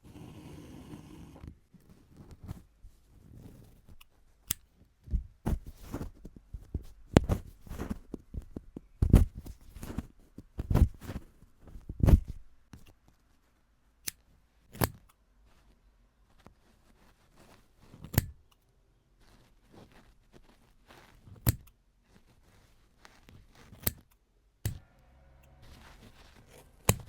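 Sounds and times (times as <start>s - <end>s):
soft thuds and scratchy strokes: 5.1s - 12.5s, 19.2s - 21.4s, 24.8s - 27.0s.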